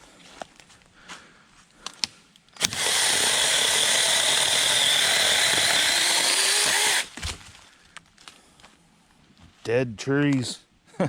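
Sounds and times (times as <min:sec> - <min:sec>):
chainsaw cutting wood: 0:02.6 - 0:07.5.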